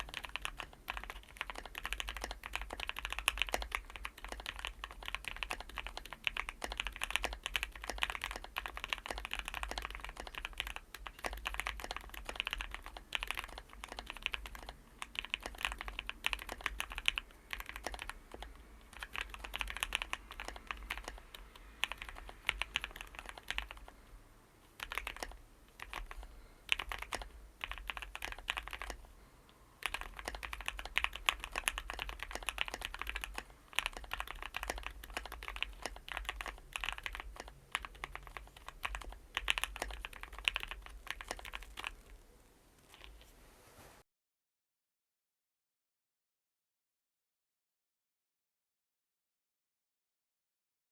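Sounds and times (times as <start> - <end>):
mechanical keyboard typing: 0.0 - 24.0, 24.8 - 29.1, 29.8 - 42.2.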